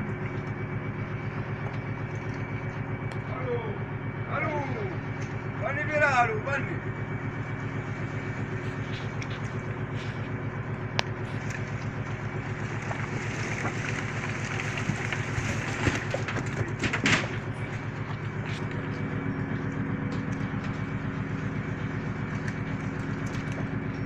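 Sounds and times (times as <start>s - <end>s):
diesel engine running: 0.0s - 24.0s
knocks and clatters: 13.6s - 17.5s.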